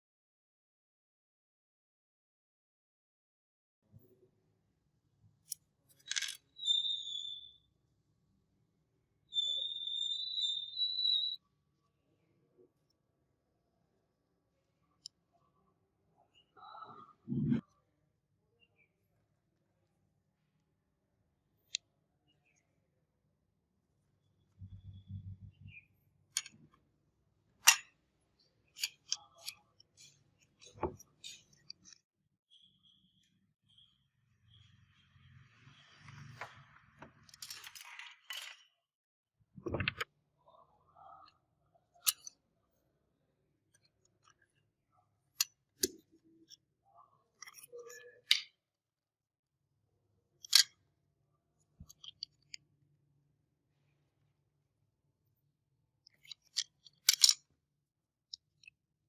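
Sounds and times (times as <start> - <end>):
small tools clicking and tapping: 5.4 - 6.5, 26.3 - 26.8, 27.6 - 28.0, 28.6 - 32.0, 42.0 - 42.4, 47.4 - 48.6, 50.4 - 50.8, 51.8 - 52.6, 56.0 - 57.5.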